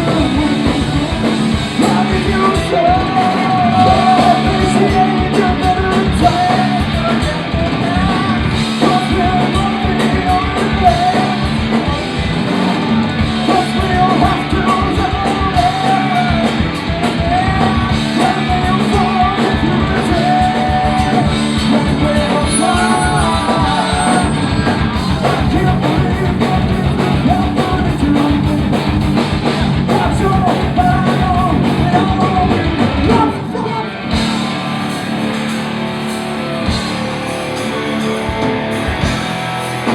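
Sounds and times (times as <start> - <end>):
punk rock band playing live: 0.0 - 39.9.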